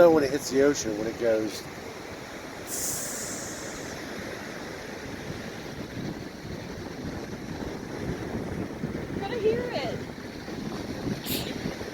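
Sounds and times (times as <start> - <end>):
surf washing onto beach: 0.0 - 11.9
wind buffeting microphone: 0.0 - 11.9
brief high hiss: 2.7 - 4.0.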